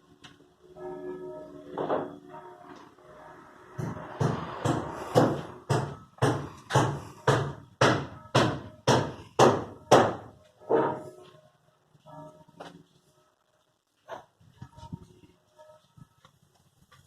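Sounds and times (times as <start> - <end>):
hammer striking wood: 3.8 - 11.0.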